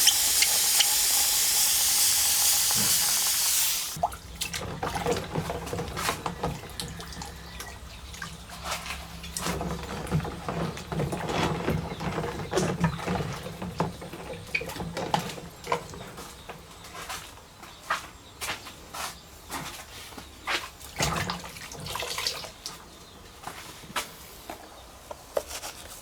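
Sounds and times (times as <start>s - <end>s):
water dripping: 0.0s - 11.2s.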